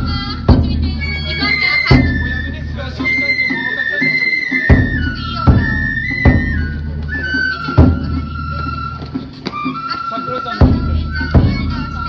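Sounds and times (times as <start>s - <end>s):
heavy drum strikes: 0.0s - 3.3s, 4.7s - 9.2s, 10.6s - 12.0s
bamboo flute melody: 0.0s - 12.0s.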